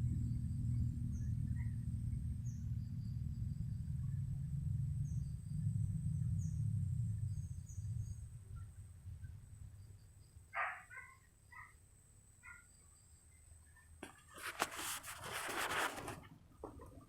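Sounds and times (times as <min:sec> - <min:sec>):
low rumble: 0:00.0 - 0:10.0.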